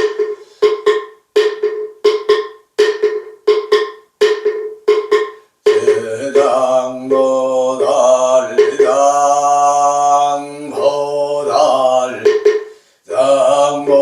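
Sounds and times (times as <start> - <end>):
man chanting: 5.7 - 12.4, 13.0 - 14.0.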